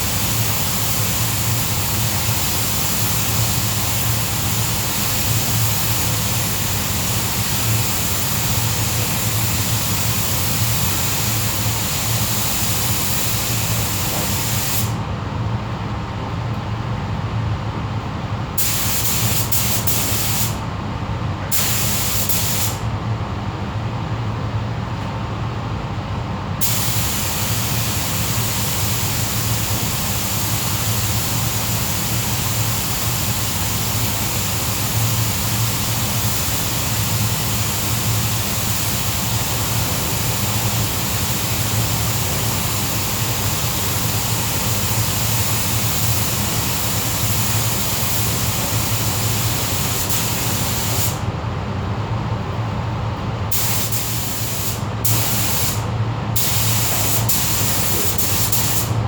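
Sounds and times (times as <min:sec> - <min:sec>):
spray gun hissing: 0:00.0 - 0:15.0, 0:18.6 - 0:20.6, 0:21.5 - 0:22.8, 0:26.6 - 0:51.2, 0:53.5 - 0:59.0
steady low hum: 0:43.3 - 0:59.0.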